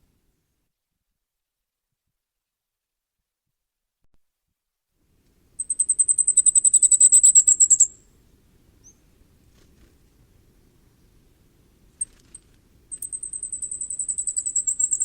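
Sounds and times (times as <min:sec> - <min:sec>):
bird singing high thin notes: 0:12.9 - 0:15.0.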